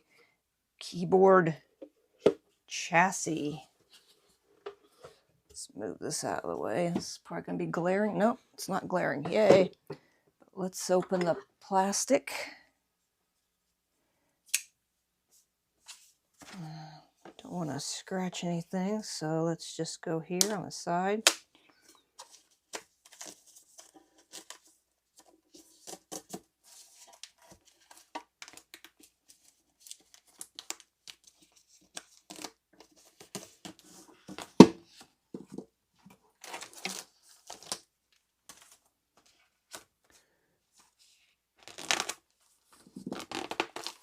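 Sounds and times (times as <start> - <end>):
plastic wrapping crinkling: 41.6 - 44.0.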